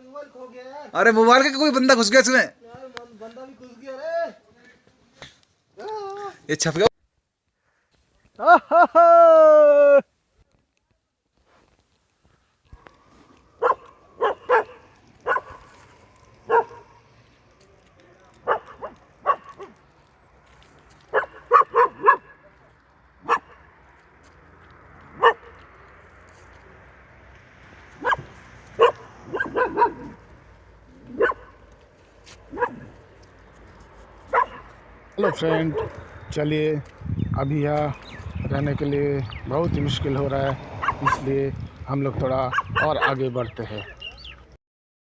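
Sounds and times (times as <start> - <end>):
dog barking: 13.6 - 15.8, 16.4 - 17.0, 18.4 - 19.8, 21.1 - 22.4, 23.2 - 23.6, 25.2 - 25.6, 28.0 - 30.2, 31.1 - 31.6, 32.5 - 33.0, 34.3 - 36.0, 40.8 - 41.3, 42.5 - 43.2.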